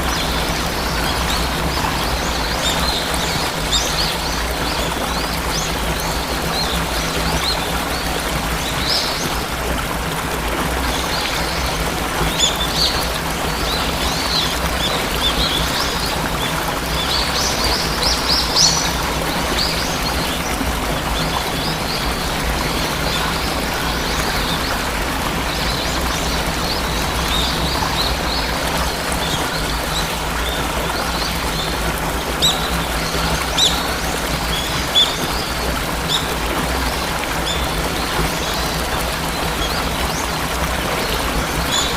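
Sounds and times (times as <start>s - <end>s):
waterfall rushing: 0.0s - 41.9s
small birds chirping: 10.8s - 41.9s.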